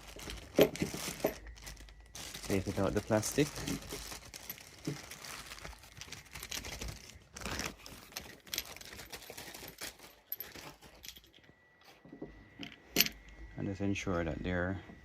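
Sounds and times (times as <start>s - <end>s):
plastic packaging crinkling: 0.0s - 11.1s.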